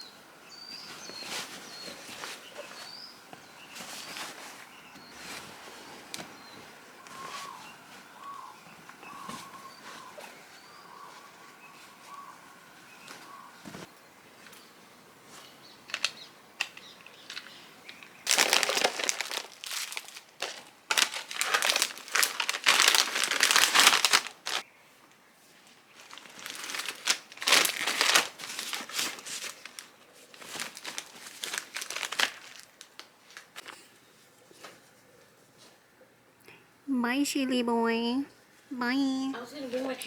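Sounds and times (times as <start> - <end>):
plastic snack packaging crinkling: 15.9 - 24.6, 25.9 - 33.8.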